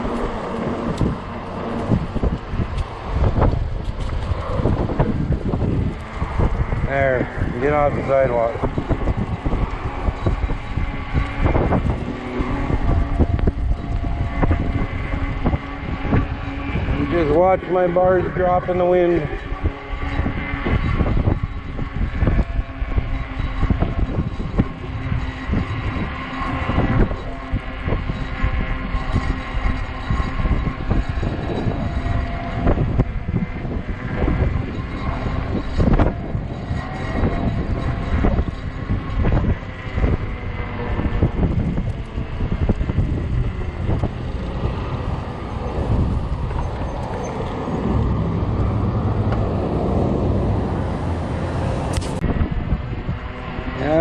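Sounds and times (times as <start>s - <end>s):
wind buffeting microphone: 0.0s - 54.0s.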